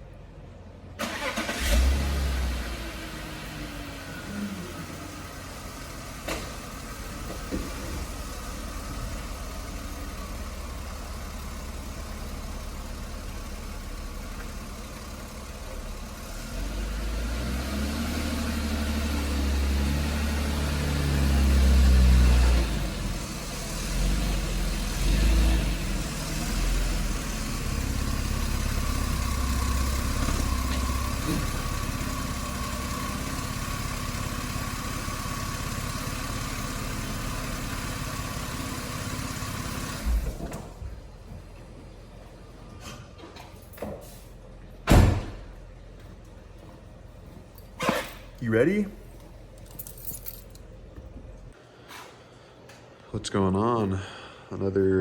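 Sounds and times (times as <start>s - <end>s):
car engine accelerating: 1.0s - 41.1s.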